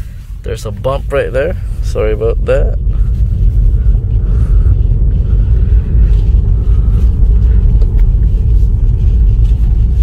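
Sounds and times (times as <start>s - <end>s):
road and tyre rumble: 0.0s - 10.0s.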